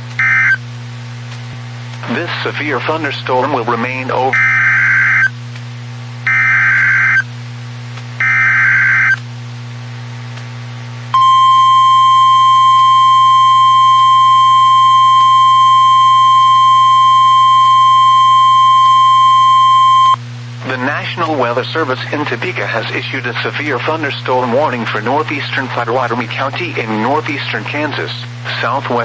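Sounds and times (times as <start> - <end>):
steady warning alarm tone: 0.2 - 0.6, 4.3 - 5.3, 6.3 - 7.2, 8.2 - 9.2, 11.2 - 20.2.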